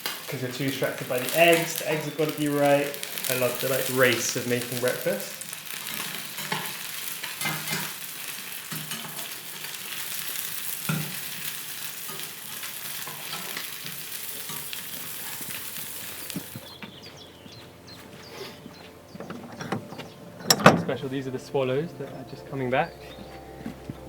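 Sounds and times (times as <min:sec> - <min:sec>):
eggs sizzling in a pan: 0:00.0 - 0:16.8.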